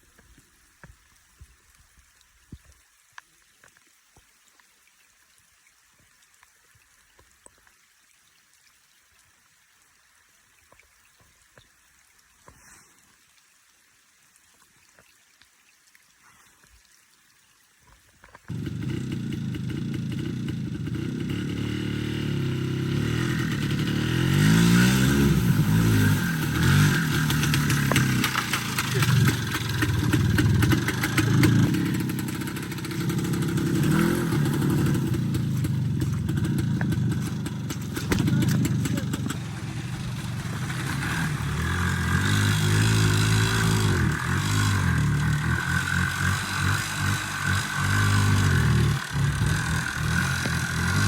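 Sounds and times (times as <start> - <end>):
vehicle engine revving: 18.5 - 51.0.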